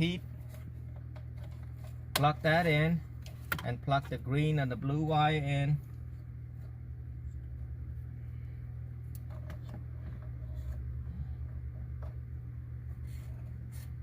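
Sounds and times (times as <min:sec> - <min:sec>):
steady low hum: 0:00.0 - 0:14.0
connectors clicking and rustling: 0:00.3 - 0:04.4.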